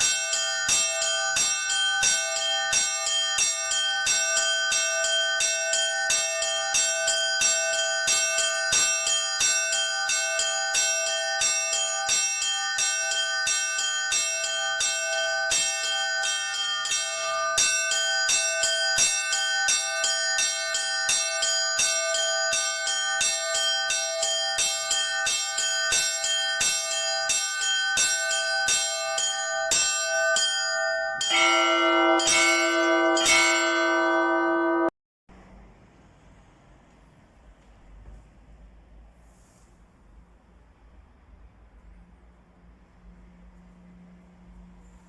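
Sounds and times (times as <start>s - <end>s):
church bells ringing rapidly: 0.0s - 34.9s.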